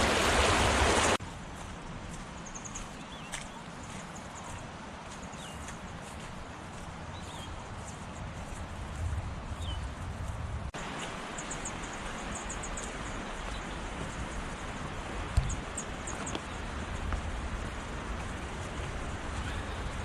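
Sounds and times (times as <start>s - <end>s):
river water rushing: 0.0s - 1.2s, 10.8s - 20.0s.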